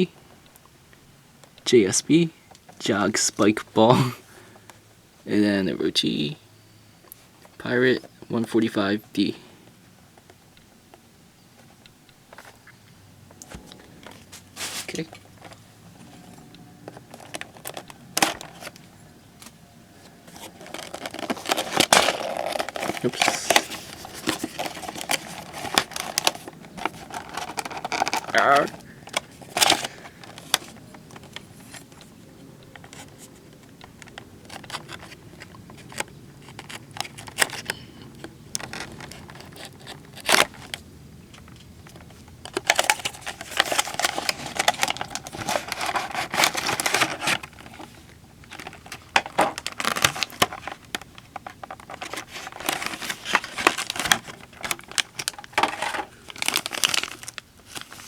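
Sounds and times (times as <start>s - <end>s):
packaging clicks and knocks: 13.4s - 58.0s
packaging crinkling and tearing: 13.4s - 58.0s.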